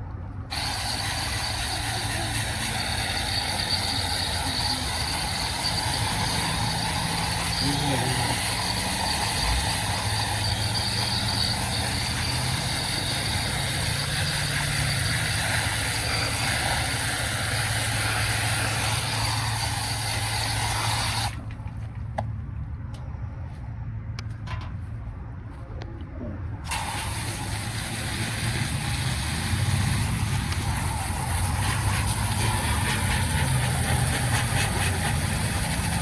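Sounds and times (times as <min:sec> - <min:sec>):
machine humming and hissing: 0:00.4 - 0:21.4, 0:26.7 - 0:36.0.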